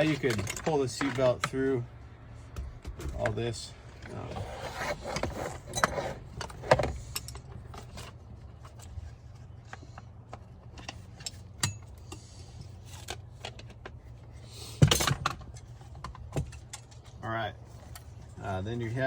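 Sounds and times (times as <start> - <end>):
seatbelt hardware clinking: 4.8 - 9.0, 9.7 - 14.1, 14.8 - 17.2.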